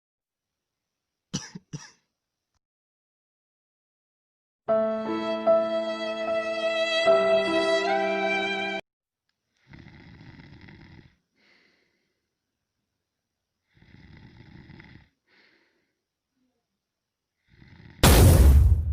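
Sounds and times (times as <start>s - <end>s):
faint breath: 9.5s - 12.3s, 13.6s - 16.0s
person snoring: 9.6s - 11.7s, 13.7s - 15.2s, 17.4s - 18.0s.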